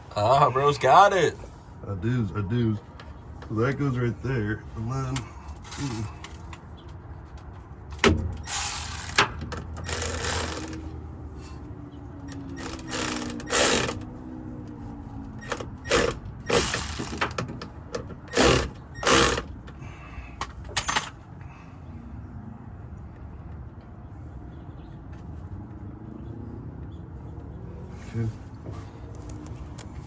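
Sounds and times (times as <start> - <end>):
ratchet wrench clicking: 8.4 - 10.8, 12.3 - 14.1, 15.4 - 17.4, 18.3 - 19.5.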